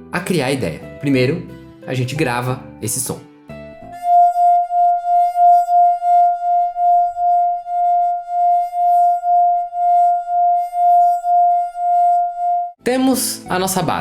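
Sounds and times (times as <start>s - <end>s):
wine glass singing: 4.0s - 12.4s.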